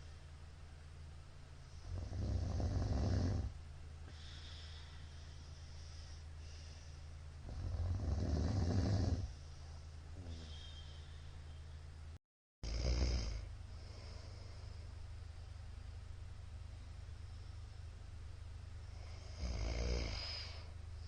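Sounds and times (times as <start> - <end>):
steady low hum: 0.0 - 21.0
quiet breathing: 1.5 - 12.0, 13.2 - 18.0, 18.7 - 21.0
man snoring loudly: 1.8 - 3.5, 7.4 - 9.3, 12.6 - 14.0, 19.0 - 20.7.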